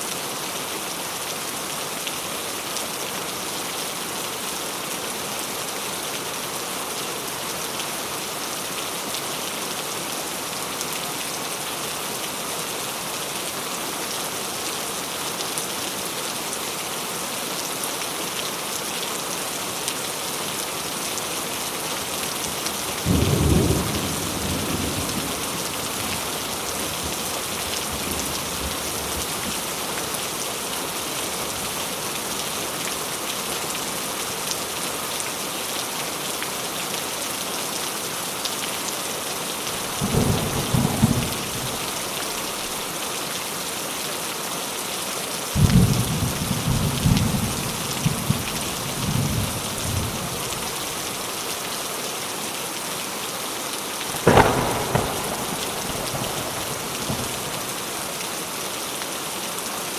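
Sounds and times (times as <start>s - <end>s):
rain falling: 0.0s - 59.9s
thunder clap and rumble: 39.8s - 41.8s, 54.2s - 57.8s.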